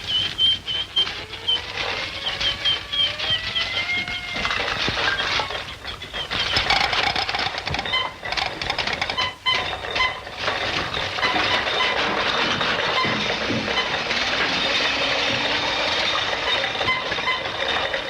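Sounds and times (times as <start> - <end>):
short whistle-like tones: 0.0 - 1.7
mechanical clattering and rattling: 0.0 - 18.0.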